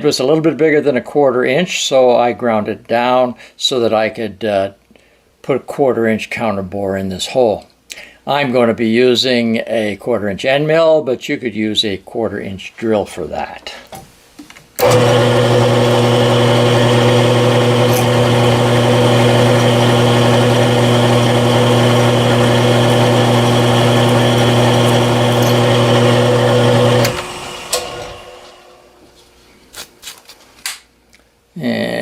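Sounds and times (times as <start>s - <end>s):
machine spindle motor humming: 14.8s - 29.0s.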